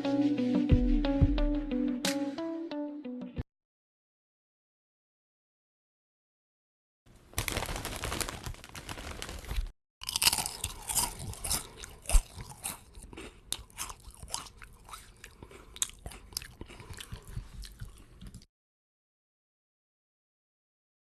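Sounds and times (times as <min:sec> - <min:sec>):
chewing potato chips: 0:07.4 - 0:18.5.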